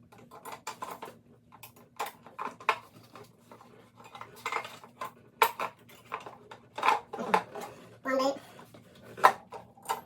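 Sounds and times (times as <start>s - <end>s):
plastic parts clattering: 0.2s - 7.8s.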